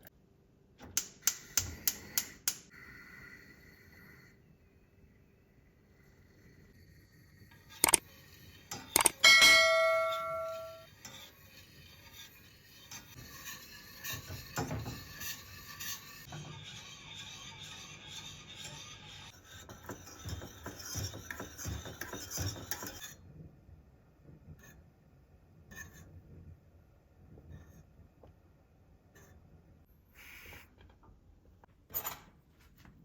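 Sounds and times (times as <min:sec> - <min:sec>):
sharp clicks: 0:09.0 - 0:09.2.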